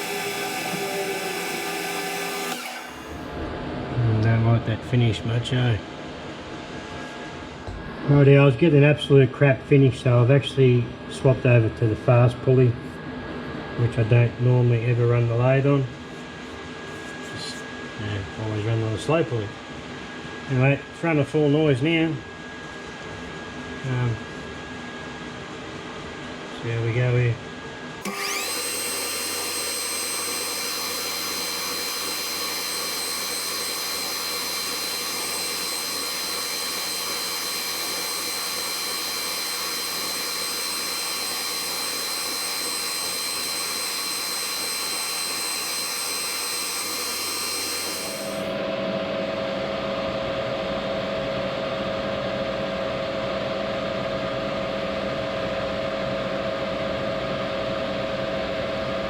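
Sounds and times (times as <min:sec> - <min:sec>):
metal lathe whining: 0:00.0 - 0:03.3, 0:28.0 - 0:48.6.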